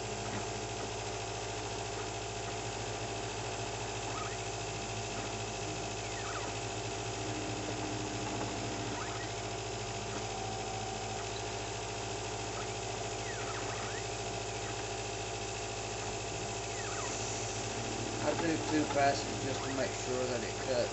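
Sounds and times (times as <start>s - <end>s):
steady machine hum: 0.0s - 20.9s
stepper motors whining: 1.9s - 20.9s.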